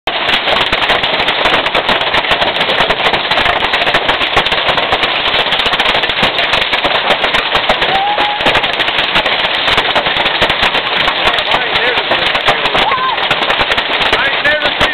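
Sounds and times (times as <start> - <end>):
hailstones clattering: 0.0 - 14.9.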